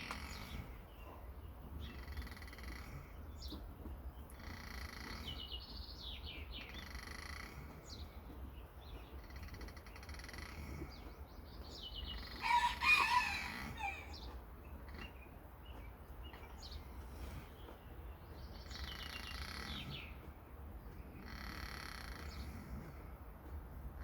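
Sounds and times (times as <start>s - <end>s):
small birds chirping: 0.0s - 24.0s
loud pitched bird call: 12.2s - 14.2s.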